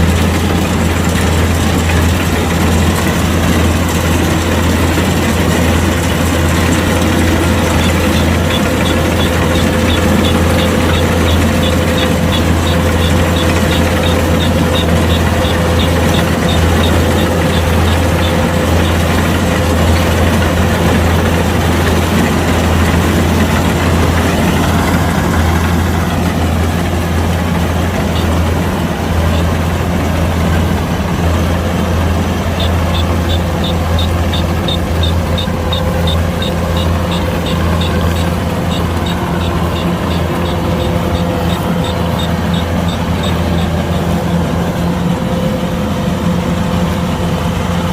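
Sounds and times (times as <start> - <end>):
combine harvester diesel hum: 0.0 - 47.9
fast high ticking: 0.2 - 28.6.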